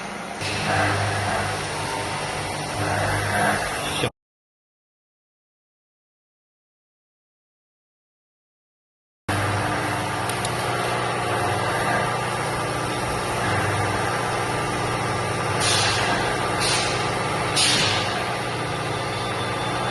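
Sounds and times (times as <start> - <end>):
machine humming: 0.0 - 4.1, 9.3 - 19.9.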